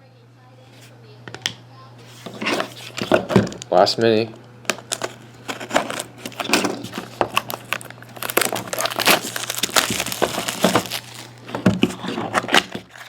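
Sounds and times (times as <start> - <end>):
steady low hum: 0.0 - 13.0
packaging crinkling and rustling: 2.1 - 3.9, 4.7 - 13.0.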